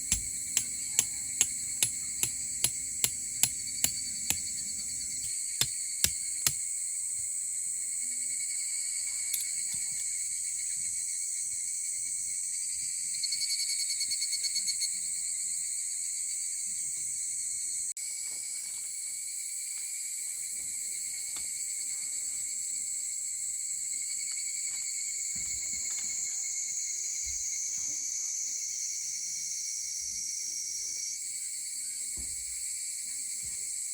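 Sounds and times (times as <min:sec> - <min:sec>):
sharp knocks: 0:00.0 - 0:05.3, 0:06.0 - 0:06.6
crickets and insects buzzing: 0:00.0 - 0:33.9.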